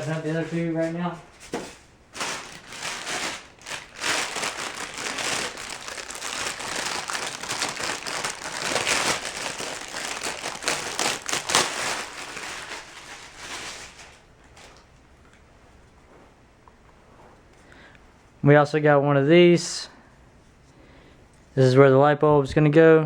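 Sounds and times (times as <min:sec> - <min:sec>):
packaging crinkling: 0:02.1 - 0:15.0.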